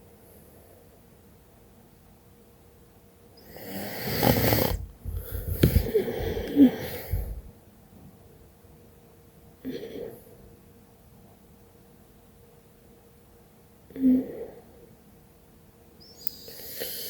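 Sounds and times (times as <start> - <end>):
woman snoring: 3.4 - 7.5, 16.4 - 17.0.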